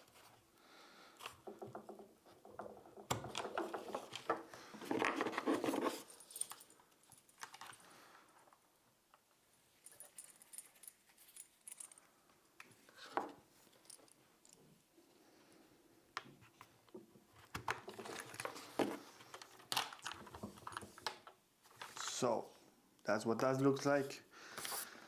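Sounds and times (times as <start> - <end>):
packaging rustling: 17.8 - 21.0.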